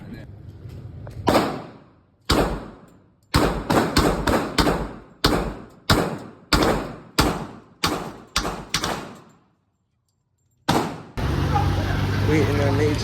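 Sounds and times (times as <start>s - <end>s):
gunshots with ringing echo: 1.3s - 9.5s, 10.7s - 11.2s.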